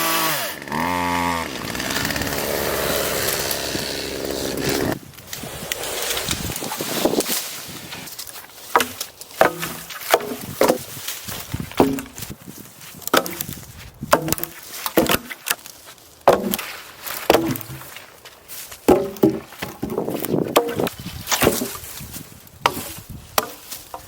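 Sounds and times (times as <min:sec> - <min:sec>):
wood being struck: 0:01.5 - 0:07.3, 0:08.7 - 0:12.4, 0:13.0 - 0:15.6, 0:16.2 - 0:18.0, 0:18.9 - 0:21.9, 0:22.6 - 0:24.0.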